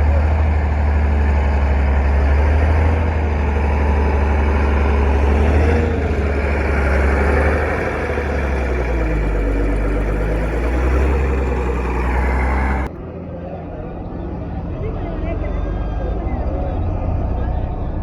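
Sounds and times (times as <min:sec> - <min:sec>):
heavy engine idling: 0:00.0 - 0:18.0.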